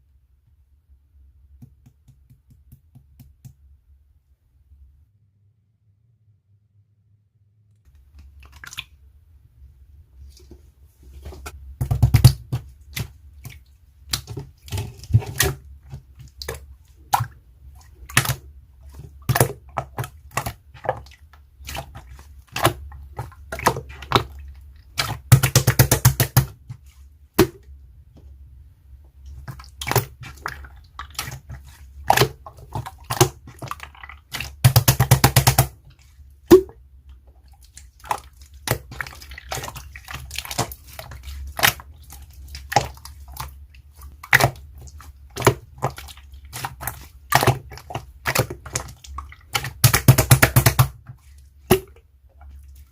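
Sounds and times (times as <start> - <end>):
slime squishing with sticky pops: 11.8 - 27.6, 29.3 - 52.9.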